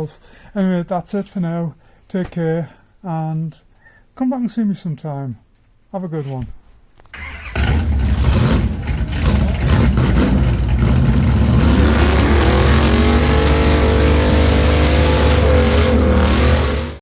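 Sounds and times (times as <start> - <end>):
vehicle engine revving: 7.2 - 17.0.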